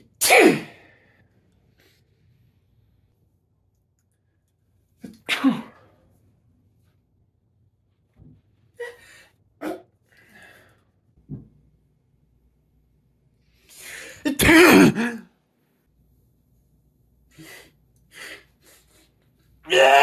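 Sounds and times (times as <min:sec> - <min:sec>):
person sneezing: 0:00.2 - 0:01.0, 0:05.2 - 0:06.0, 0:14.0 - 0:15.3.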